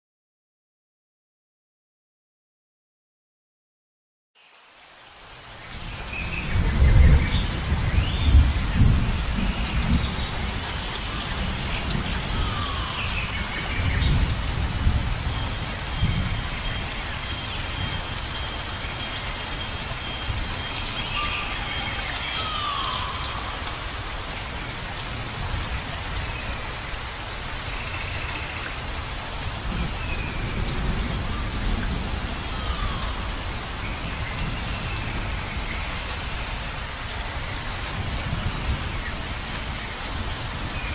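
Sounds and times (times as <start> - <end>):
steady rain: 4.4 - 40.9
low thunder rumbles: 6.0 - 18.1, 29.4 - 36.7.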